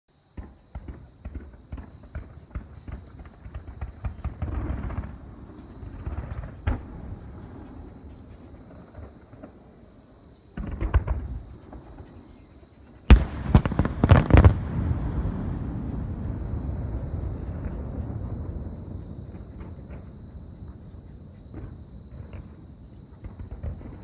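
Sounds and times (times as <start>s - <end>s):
fireworks exploding: 0.4s - 24.0s
deep rumbling echo: 13.1s - 21.8s.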